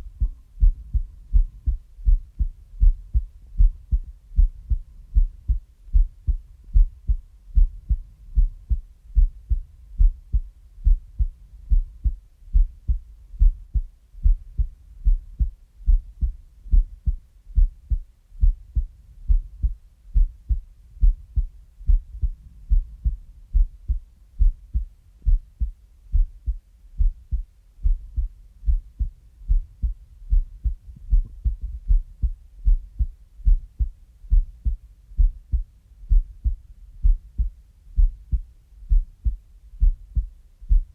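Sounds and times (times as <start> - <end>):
heartbeat thumps: 0.0 - 40.9.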